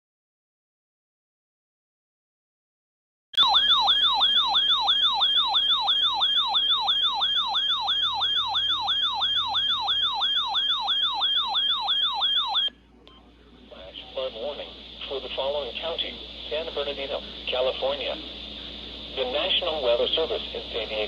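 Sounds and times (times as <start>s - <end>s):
electronic siren yelp alert tone: 3.4s - 12.7s.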